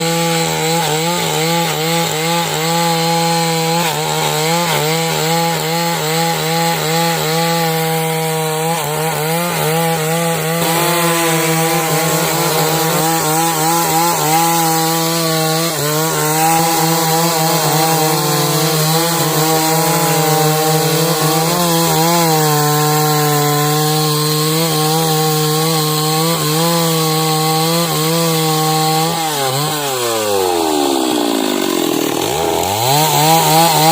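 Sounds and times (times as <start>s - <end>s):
chainsaw cutting timber: 0.0s - 33.9s.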